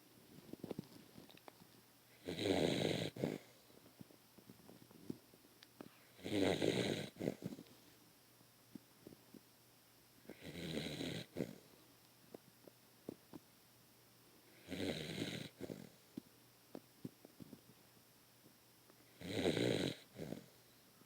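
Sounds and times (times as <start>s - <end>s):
dog snoring: 2.2s - 3.6s, 6.1s - 7.6s, 10.3s - 11.7s, 14.5s - 16.0s, 19.1s - 20.6s.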